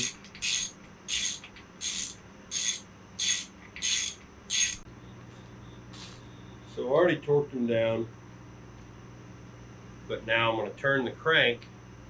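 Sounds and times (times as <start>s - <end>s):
ratchet wrench clicking: 0.0s - 4.8s.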